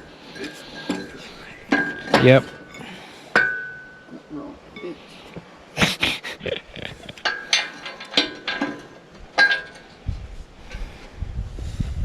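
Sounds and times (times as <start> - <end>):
metal knocks and clanks: 0.7 - 2.7, 7.2 - 10.0.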